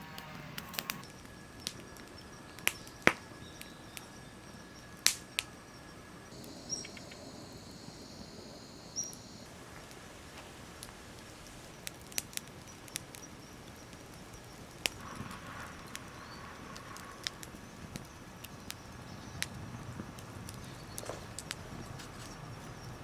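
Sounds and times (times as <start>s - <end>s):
faint high buzz: 0.0s - 10.6s
wood fire crackling: 0.0s - 23.0s.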